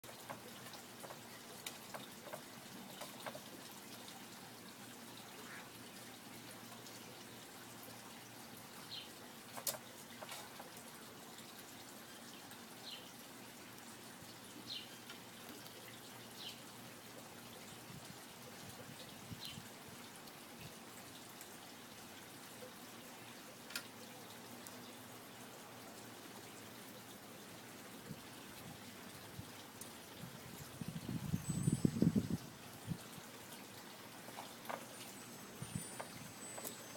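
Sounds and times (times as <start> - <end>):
small clicks and ticks: 0.0 - 4.2, 9.5 - 10.9, 23.6 - 24.0.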